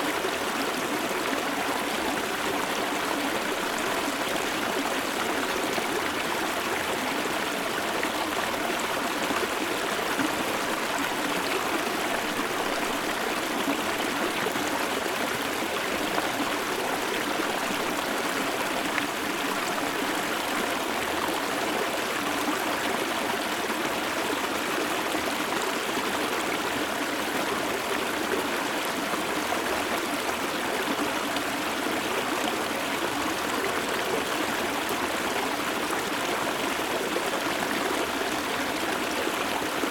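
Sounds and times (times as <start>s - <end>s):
stream flowing over stones: 0.0s - 39.9s.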